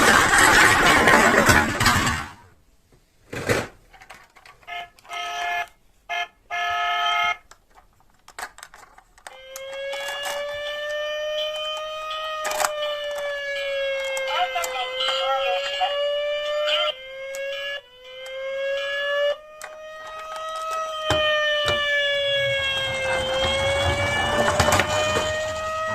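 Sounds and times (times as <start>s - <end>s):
toy electronic siren: 4.6s - 7.4s, 9.3s - 25.9s.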